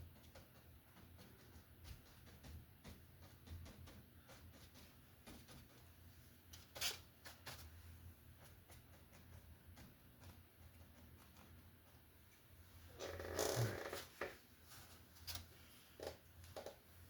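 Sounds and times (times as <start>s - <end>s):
paintbrush strokes on canvas: 14.0s - 16.0s.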